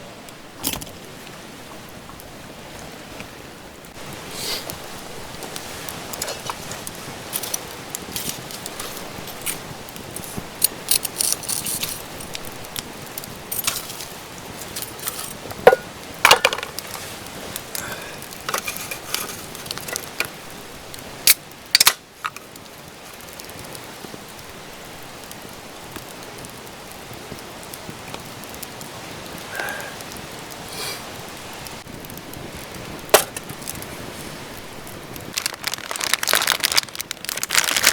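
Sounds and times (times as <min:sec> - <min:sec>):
steady rain: 0:00.0 - 0:37.9
small metal items clinking: 0:07.3 - 0:12.4, 0:13.4 - 0:17.1, 0:18.4 - 0:20.3, 0:35.3 - 0:37.9.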